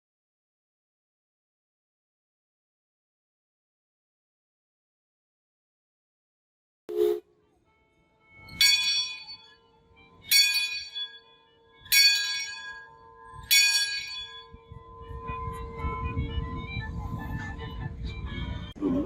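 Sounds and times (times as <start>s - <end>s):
bell ringing: 8.4s - 16.6s.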